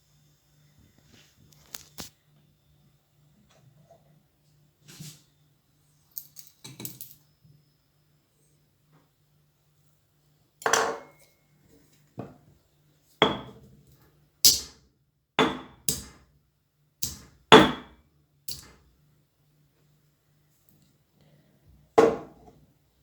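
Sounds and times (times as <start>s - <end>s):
kitchen utensils knocking and clinking: 10.6s - 11.2s, 17.0s - 17.9s.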